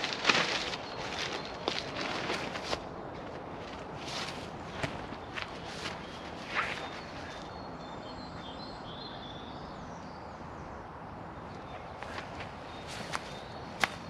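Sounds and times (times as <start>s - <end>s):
crunching footsteps: 0.0s - 7.4s, 12.0s - 14.0s
small birds chirping: 0.0s - 14.0s.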